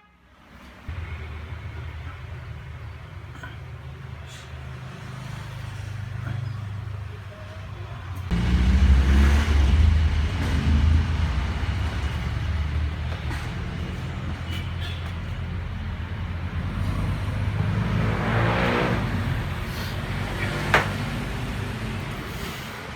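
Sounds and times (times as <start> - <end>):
road noise: 0.0 - 22.9
car engine rumble: 5.5 - 22.9.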